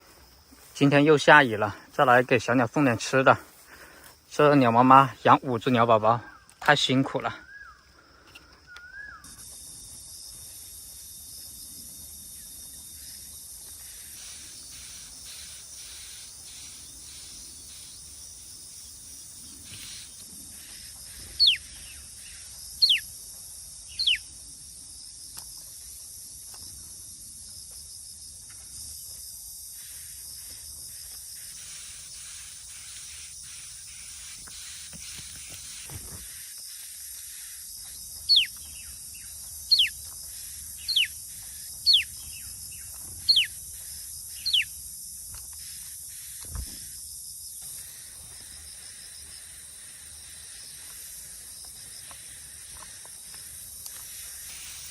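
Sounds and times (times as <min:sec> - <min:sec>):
bird calling: 0:07.3 - 0:07.9, 0:08.6 - 0:09.4, 0:13.8 - 0:23.1, 0:23.9 - 0:24.3, 0:38.3 - 0:38.9, 0:39.7 - 0:40.0, 0:40.8 - 0:41.2, 0:41.8 - 0:42.2, 0:43.2 - 0:43.6
steady high hiss: 0:09.2 - 0:25.2, 0:31.3 - 0:37.6, 0:47.5 - 0:54.9.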